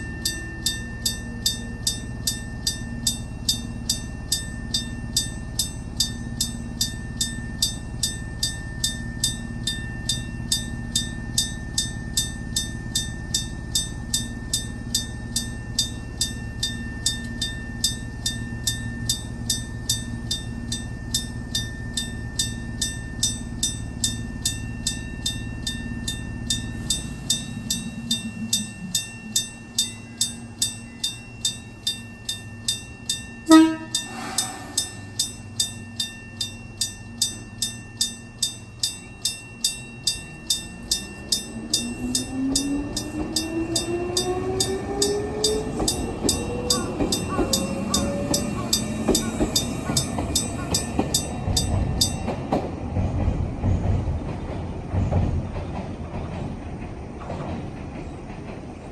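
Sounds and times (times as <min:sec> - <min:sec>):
level-crossing bell ringing: 0:00.0 - 0:53.8
train rumble: 0:00.0 - 0:58.9
train horn toot: 0:33.5 - 0:35.0.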